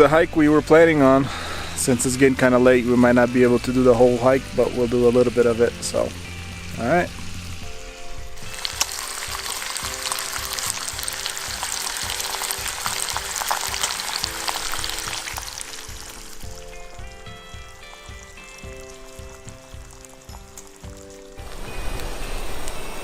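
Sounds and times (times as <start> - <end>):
background music with soft beat: 0.0 - 23.0
food sizzling in a pan: 0.4 - 23.0.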